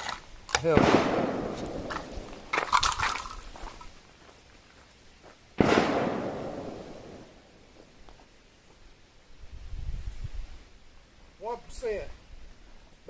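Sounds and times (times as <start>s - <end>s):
shotgun blast echoing: 0.6s - 2.6s, 5.6s - 7.5s
metallic clatter: 1.9s - 3.6s.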